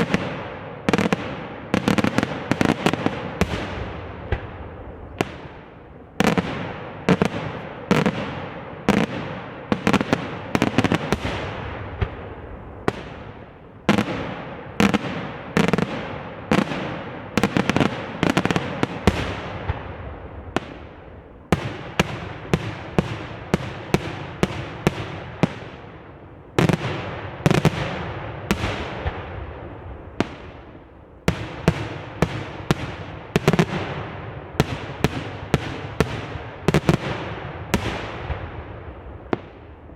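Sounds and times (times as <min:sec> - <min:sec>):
fireworks bursting and crackling: 0:00.0 - 0:39.9.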